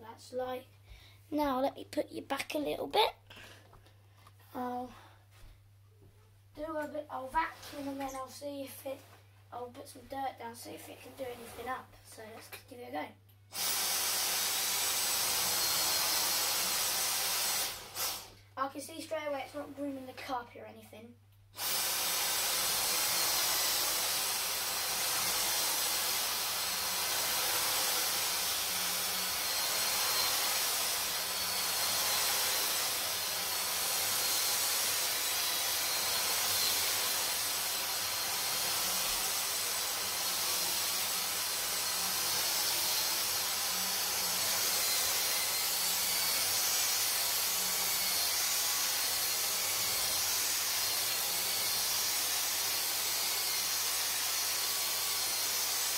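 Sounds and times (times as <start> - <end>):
stick vacuum running on carpet: 13.6 - 18.3, 21.6 - 55.9.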